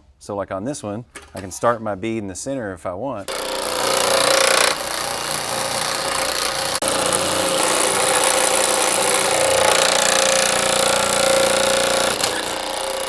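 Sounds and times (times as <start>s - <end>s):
power hammer clattering on sheet metal: 3.3s - 13.0s.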